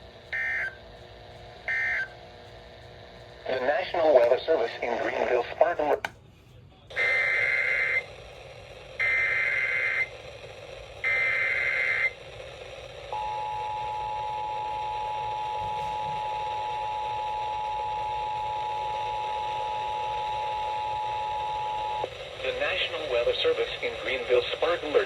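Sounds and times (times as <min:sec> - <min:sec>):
two-tone attention signal: 0:00.4 - 0:00.8, 0:01.7 - 0:02.1, 0:13.1 - 0:22.0.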